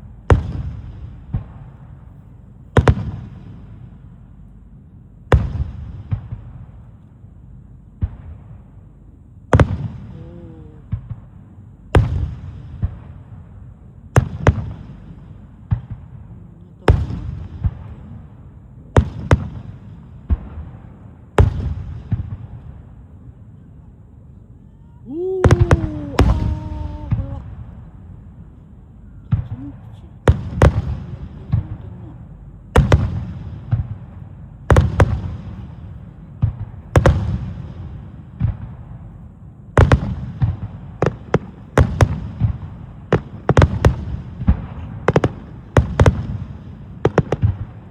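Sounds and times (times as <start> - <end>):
fireworks bangs: 0.0 - 4.0, 9.6 - 11.4, 12.0 - 18.3, 18.9 - 23.0, 25.1 - 28.1, 29.2 - 47.9.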